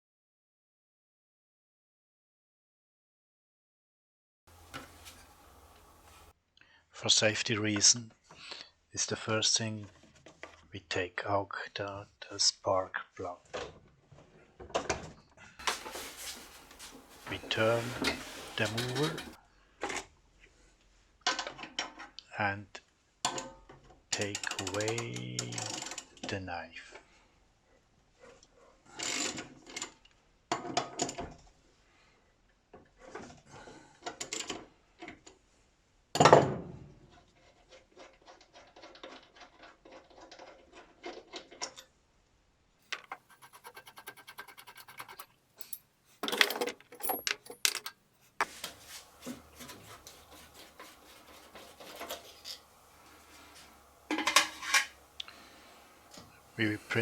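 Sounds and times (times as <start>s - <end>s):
tools knocking and scraping metal: 15.6s - 20.0s, 42.9s - 55.3s.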